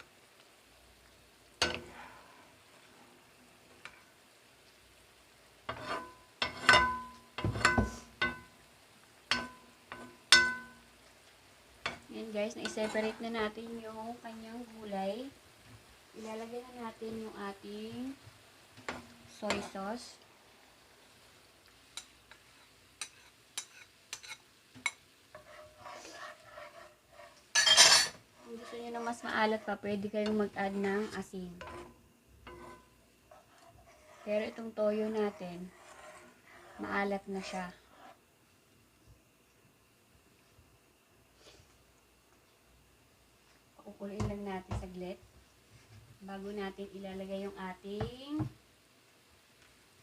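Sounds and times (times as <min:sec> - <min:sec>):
utensils tapping a pot: 0:05.7 - 0:08.5, 0:09.3 - 0:10.8
metal utensil knocking on pot: 0:09.3 - 0:10.8.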